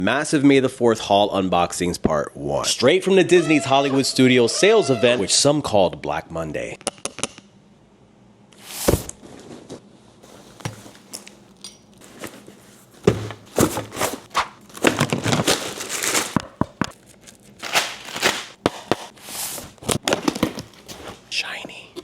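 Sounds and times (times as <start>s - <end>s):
packaging crinkling and tearing: 10.2s - 21.3s.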